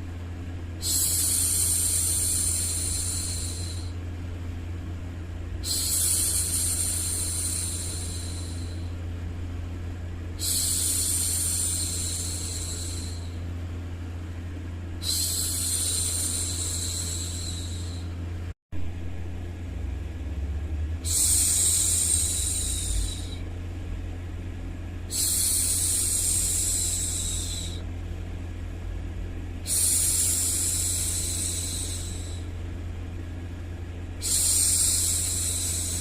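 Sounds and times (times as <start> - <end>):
steady low hum: 0.0 - 36.0
woman shushing: 15.0 - 18.1, 29.7 - 32.4.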